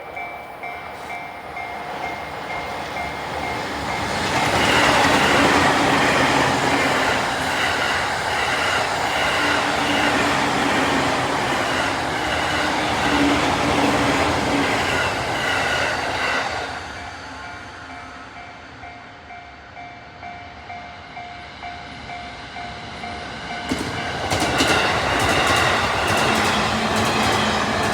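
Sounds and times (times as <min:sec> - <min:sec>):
level crossing warning bell: 0:00.0 - 0:06.9
train passing: 0:00.0 - 0:27.9.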